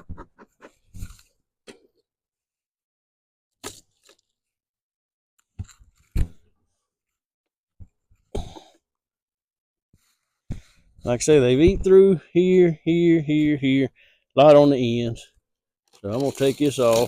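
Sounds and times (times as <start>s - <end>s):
newspaper rustle: 15.9s - 17.0s.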